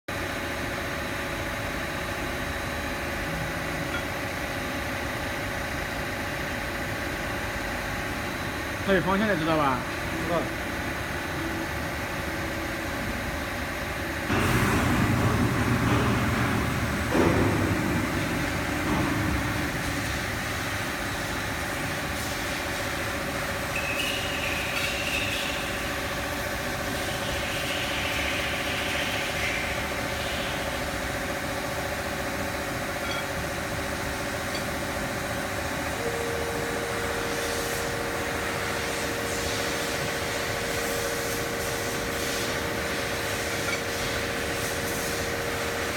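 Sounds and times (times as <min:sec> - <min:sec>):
grinding machine humming: 0:09.9 - 0:45.9
steady machine tone: 0:31.5 - 0:42.1.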